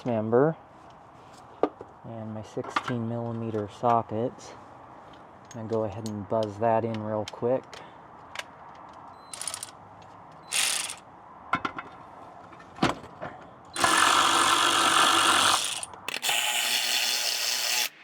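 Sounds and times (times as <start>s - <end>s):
power tool spinning socket: 9.3s - 9.8s, 10.5s - 11.0s, 13.8s - 18.0s.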